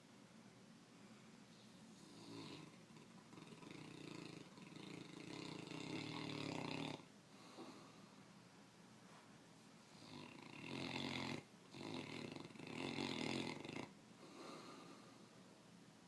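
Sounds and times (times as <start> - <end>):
person snoring: 2.0 - 8.0, 10.0 - 15.2.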